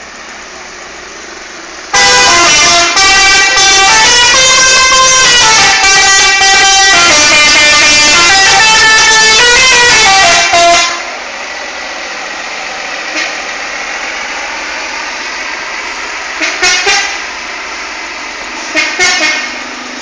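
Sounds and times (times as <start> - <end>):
traffic noise: 0.0 - 20.0
multi-tone musical bus horn: 1.9 - 11.2, 13.1 - 13.4, 16.4 - 17.3, 18.6 - 19.8.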